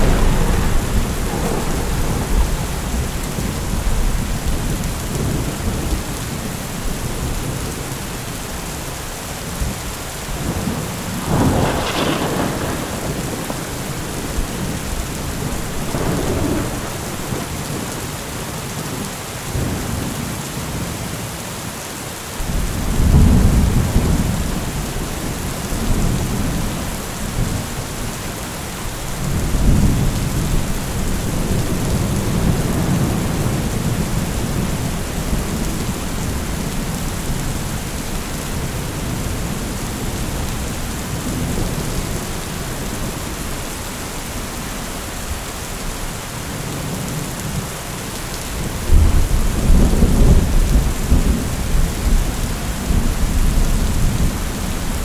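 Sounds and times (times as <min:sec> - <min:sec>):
thunder rolling: 0:00.0 - 0:06.4, 0:09.6 - 0:18.1, 0:22.4 - 0:28.2
heavy rain: 0:00.0 - 0:55.0.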